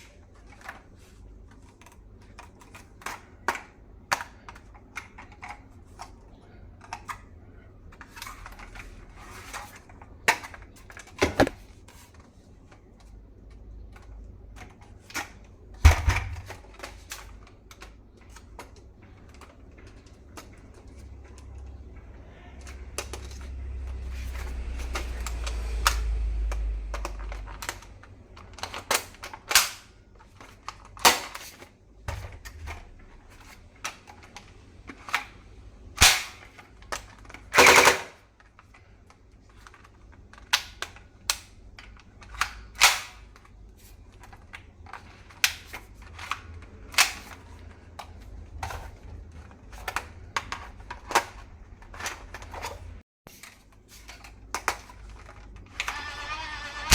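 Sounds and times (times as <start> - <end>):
toy rifle mechanism clacking: 55.8 - 56.9.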